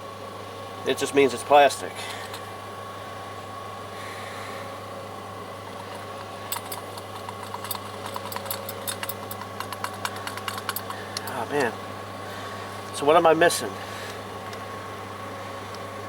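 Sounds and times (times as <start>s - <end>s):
low mechanical hum: 0.0s - 16.0s
tools and small parts clicking: 6.5s - 11.4s.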